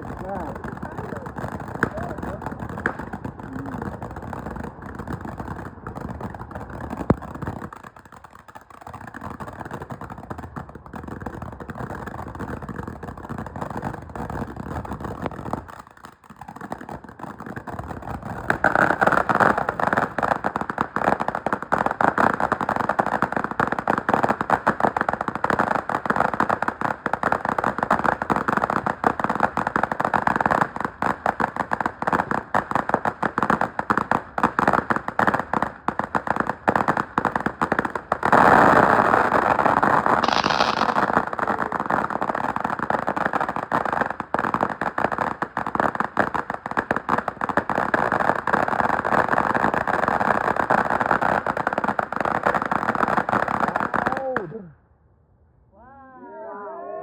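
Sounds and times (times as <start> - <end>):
firework bang: 0.0 - 7.6, 39.5 - 42.5
fireworks rumbling hiss: 0.0 - 7.9, 8.9 - 54.0
rapid crackling pops: 0.0 - 54.6.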